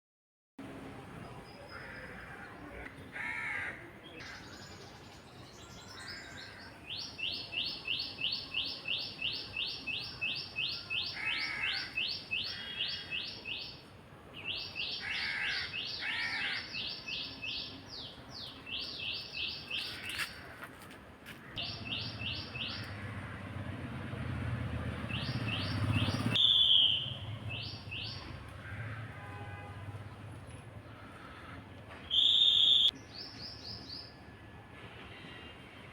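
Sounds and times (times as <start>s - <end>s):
harsh bird calls: 5.8s - 13.8s, 14.5s - 20.6s, 21.4s - 23.5s, 25.0s - 29.0s.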